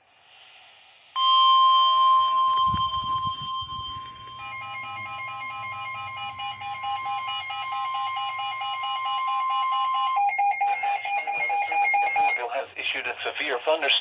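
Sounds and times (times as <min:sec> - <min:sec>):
rapid electronic beeping alarm: 0:01.2 - 0:12.4
steady alarm tone: 0:01.2 - 0:12.4.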